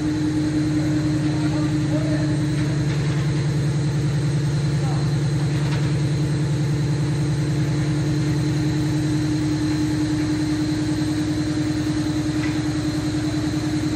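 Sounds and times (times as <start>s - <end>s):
machine humming with fast pulse: 0.0s - 13.9s
steady machine tone: 0.0s - 13.9s.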